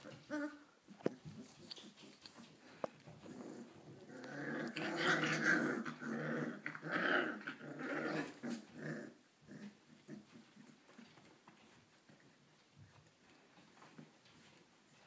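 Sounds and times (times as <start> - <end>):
puppies growling: 0.0 - 1.4, 2.7 - 11.6.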